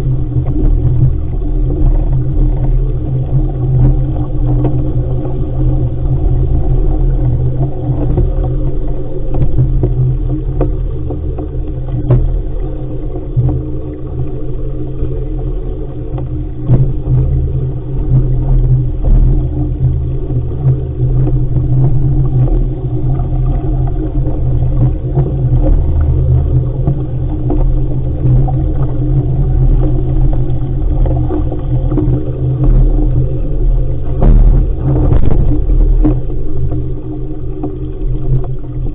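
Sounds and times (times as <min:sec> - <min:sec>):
water rushing past hull: 0:00.0 - 0:38.9
wind rumbling on microphone: 0:00.0 - 0:38.9
knocks and splashes: 0:09.3 - 0:13.8, 0:16.0 - 0:38.9.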